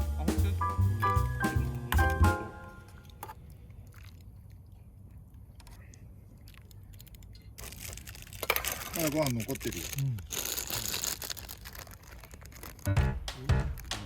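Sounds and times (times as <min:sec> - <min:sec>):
vibraphone background music: 0:00.0 - 0:02.9
quiet chewing: 0:02.8 - 0:13.0.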